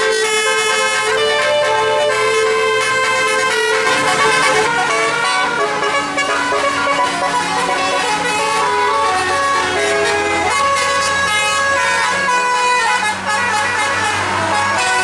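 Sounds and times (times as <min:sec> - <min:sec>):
musical air horn tune: 0:00.0 - 0:15.0
low engine hum: 0:00.6 - 0:05.3.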